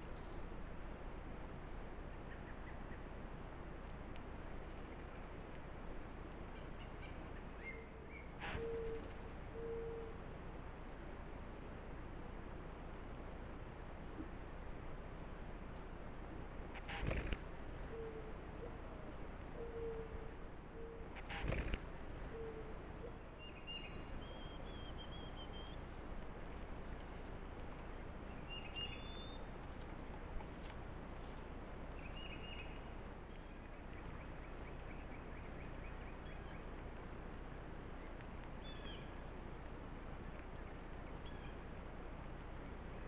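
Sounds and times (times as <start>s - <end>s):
small birds chirping: 0.0s - 1.0s, 16.2s - 18.2s, 20.9s - 43.0s.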